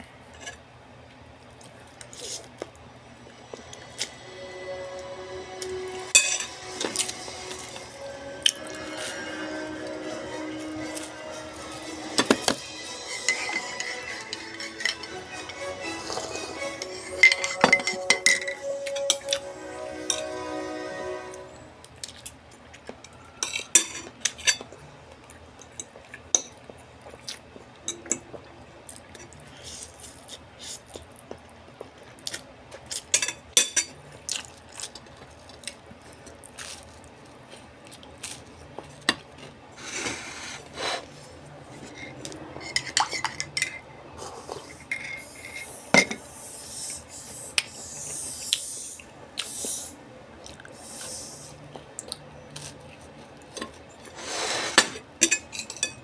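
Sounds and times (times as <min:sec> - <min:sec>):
utensils clinking on dishes: 0:05.6 - 0:19.4, 0:23.4 - 0:24.8, 0:32.9 - 0:34.0, 0:41.7 - 0:43.9, 0:44.5 - 0:46.3, 0:54.5 - 0:56.0.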